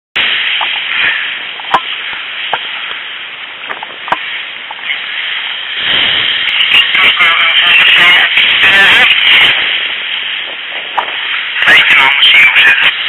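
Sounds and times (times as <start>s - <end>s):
wind on microphone: 0.2s - 13.0s.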